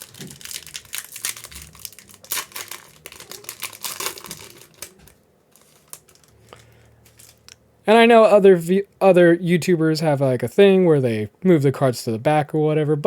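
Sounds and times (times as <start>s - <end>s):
plastic and foil packaging crinkling: 0.0s - 7.5s.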